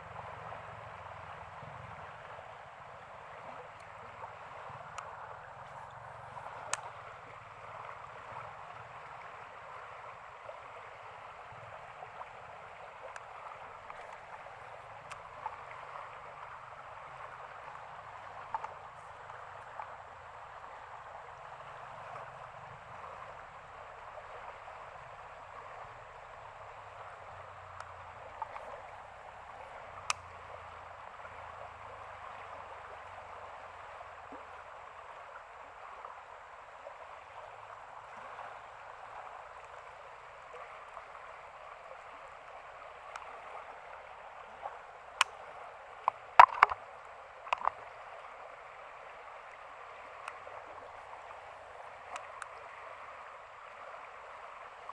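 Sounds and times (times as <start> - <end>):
rushing floodwater: 0.0 - 54.9
sharp clicks and knocks: 46.1 - 46.8.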